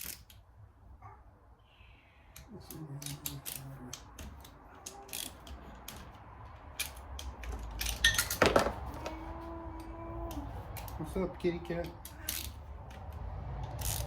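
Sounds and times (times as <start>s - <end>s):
hand ratchet clicking: 0.0s - 0.4s, 2.4s - 8.4s, 11.8s - 14.0s
metal tools clinking: 4.4s - 9.1s.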